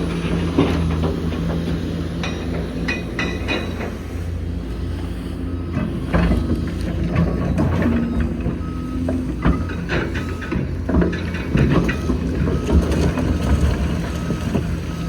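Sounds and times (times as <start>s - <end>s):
excavator diesel engine: 0.0s - 15.0s
metallic clanks and knocks: 0.1s - 4.3s.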